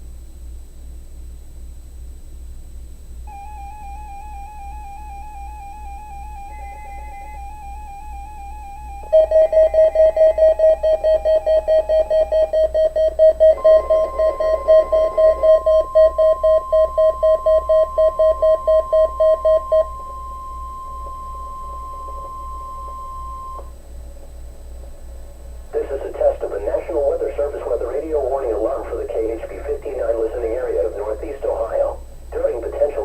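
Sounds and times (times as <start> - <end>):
steady attention tone: 3.3 - 23.8, 25.4 - 33.0
rapid electronic beeping: 7.8 - 23.7, 25.8 - 33.0.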